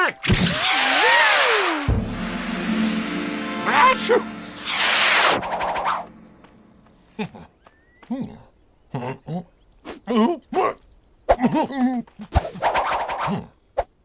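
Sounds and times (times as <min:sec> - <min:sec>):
cartoon characters grunting: 0:00.0 - 0:01.6, 0:08.1 - 0:12.3
crickets chirring: 0:01.5 - 0:14.0.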